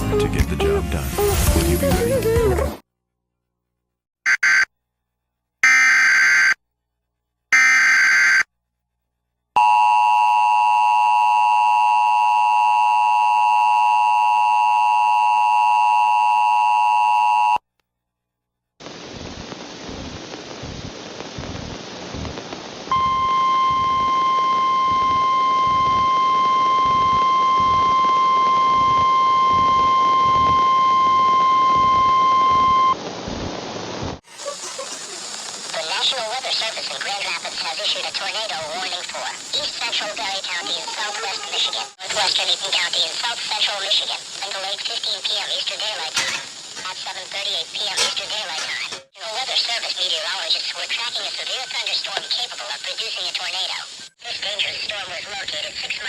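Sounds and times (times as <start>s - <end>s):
harsh two-tone attention signal: 4.3s - 4.7s, 22.9s - 33.0s
radio static hiss: 18.8s - 25.1s, 32.2s - 56.0s.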